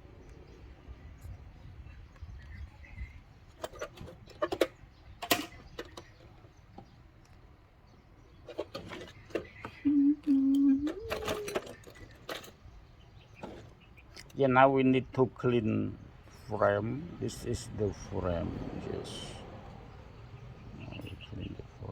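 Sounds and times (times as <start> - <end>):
hand tools clicking and tapping: 10.4 - 12.6.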